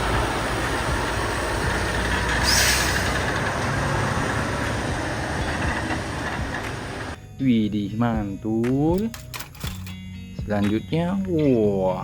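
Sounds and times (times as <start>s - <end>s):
heavy truck engine running: 0.0s - 7.2s
air brakes hissing: 1.0s - 3.4s.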